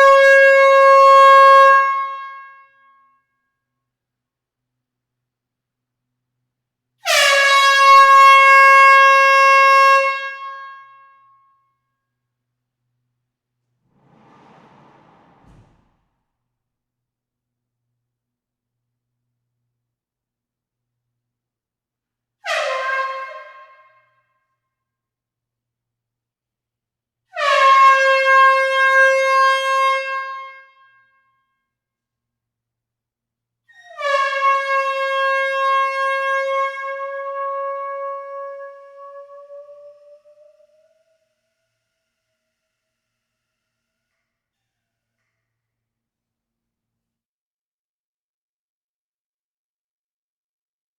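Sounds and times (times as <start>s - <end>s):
air horn blast: 7.1s - 11.0s, 13.8s - 16.1s.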